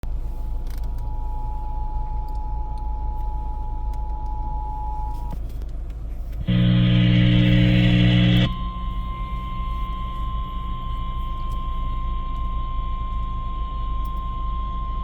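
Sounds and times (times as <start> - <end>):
steady low rumble: 5.7 - 12.9
two-tone alarm signal: 6.4 - 15.0.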